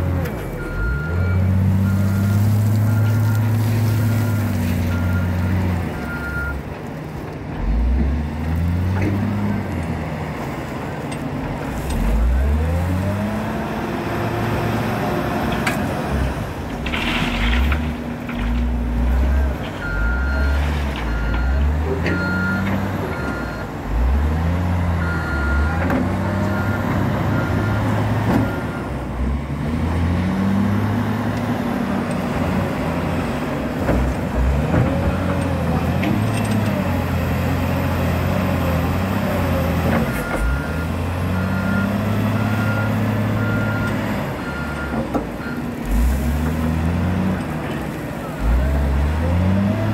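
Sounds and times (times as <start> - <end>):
diesel engine revving: 0.0 - 6.6, 7.5 - 49.9
reversing alarm beeping: 25.0 - 25.8.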